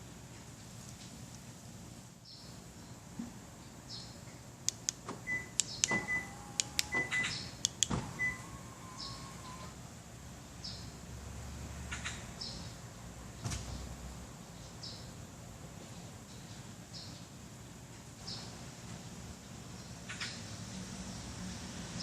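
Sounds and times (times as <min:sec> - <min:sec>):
relay clicks: 0:04.7 - 0:08.0.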